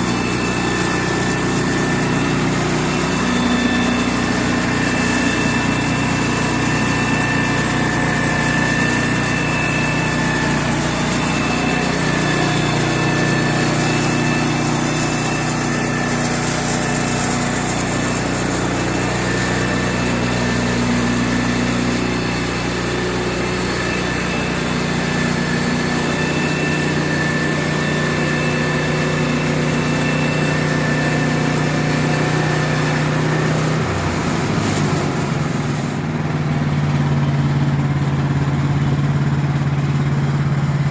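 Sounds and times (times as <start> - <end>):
high-pitched saw tones: 0.0 - 36.1
sawmill engine running: 0.0 - 40.9.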